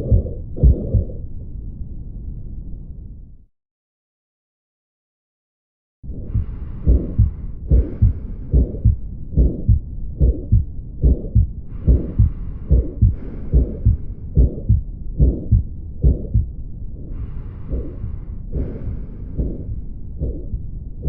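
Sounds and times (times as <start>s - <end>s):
heartbeat thuds: 0.0s - 1.2s, 6.3s - 16.6s, 17.7s - 21.0s
soft breath hiss: 6.2s - 20.8s.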